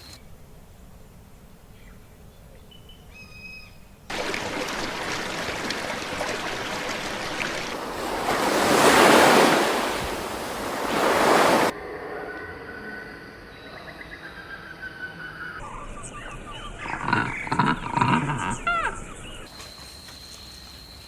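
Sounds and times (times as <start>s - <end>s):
ocean surf rushing: 4.1s - 11.7s.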